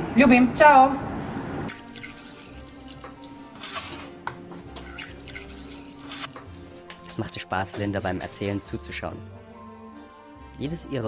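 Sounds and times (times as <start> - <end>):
quiet background music: 1.7 - 11.0
light clicks and drips: 4.2 - 6.5.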